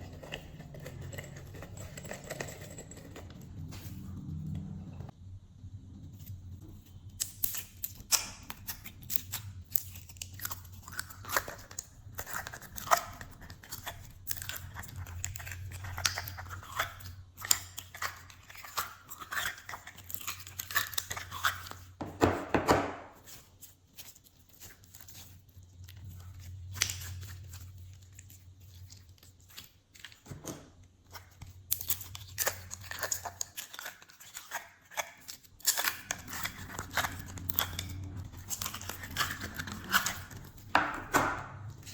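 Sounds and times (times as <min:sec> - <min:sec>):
slime squelching: 0:06.1 - 0:41.9.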